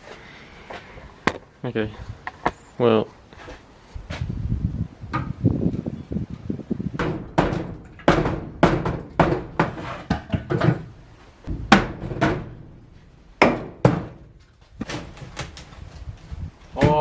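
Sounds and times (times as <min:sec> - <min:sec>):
hard knocks on timber: 0:07.0 - 0:10.9, 0:11.5 - 0:15.5
wood scraping and rumbling: 0:07.7 - 0:16.7.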